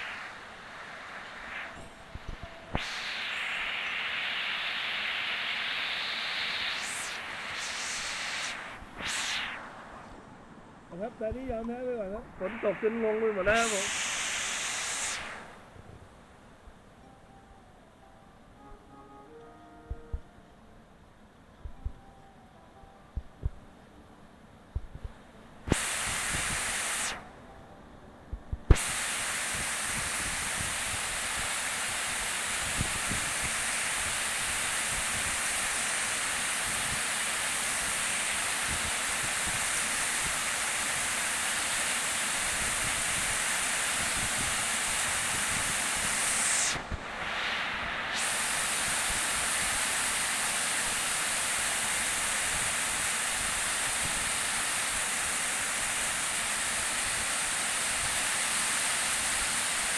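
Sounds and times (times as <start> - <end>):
heavy rain hissing: 0.0 - 10.3, 10.9 - 15.9, 28.7 - 59.9.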